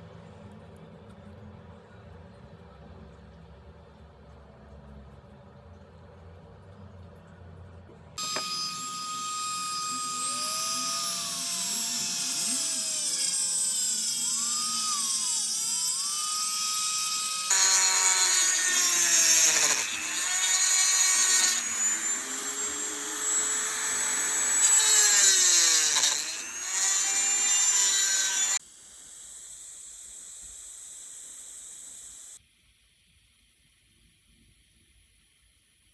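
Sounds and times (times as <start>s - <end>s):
power tool motor whining: 8.2s - 32.4s.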